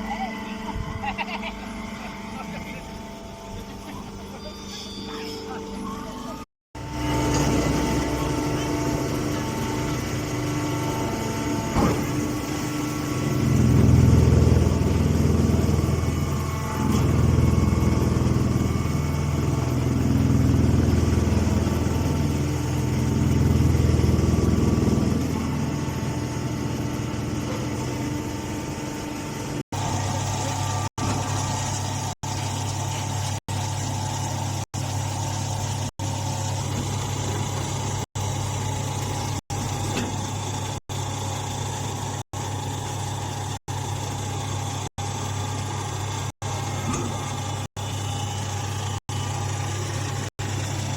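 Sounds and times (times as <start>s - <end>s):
baler machine hum: 0.0s - 50.9s.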